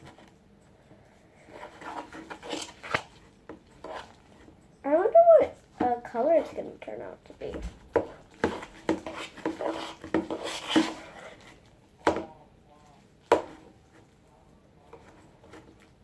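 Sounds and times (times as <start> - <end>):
utensil scraping a bowl: 1.5 - 4.5, 7.9 - 11.7.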